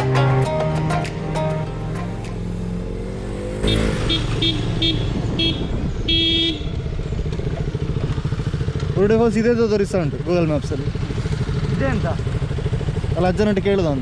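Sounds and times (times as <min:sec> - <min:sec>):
background music: 0:00.0 - 0:04.6
motorcycle engine running: 0:00.9 - 0:14.0
vehicle horn honking: 0:03.5 - 0:06.9.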